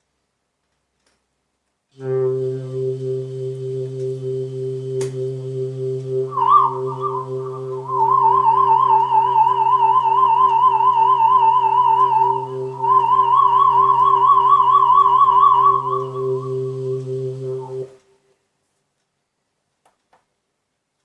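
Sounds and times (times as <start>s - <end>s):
low held synth chord: 2.0s - 18.1s
synth lead with vibrato: 2.0s - 18.1s.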